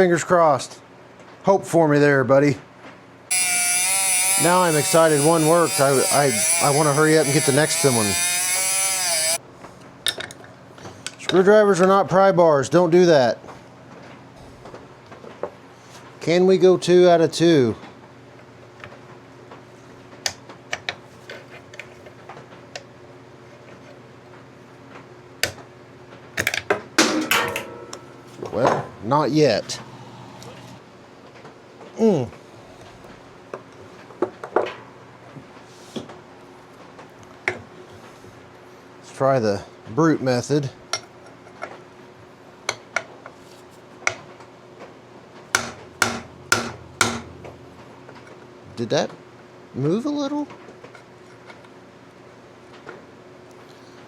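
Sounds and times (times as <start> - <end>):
faint steady hum: 27.0 - 30.8.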